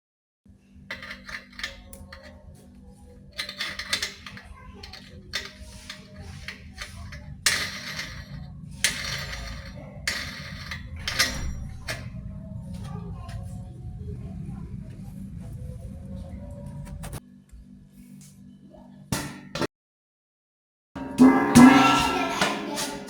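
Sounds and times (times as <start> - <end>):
steady low hum: 0.6 - 19.1
metal parts clattering and scraping: 0.9 - 2.4, 3.4 - 13.4.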